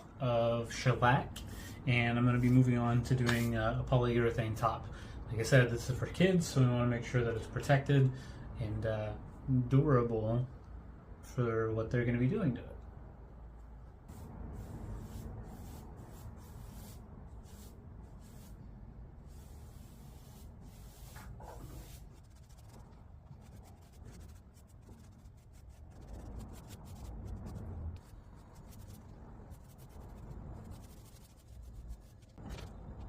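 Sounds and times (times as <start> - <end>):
low steady rumble: 8.2 - 33.0
rubbing on wooden surface: 19.3 - 32.4.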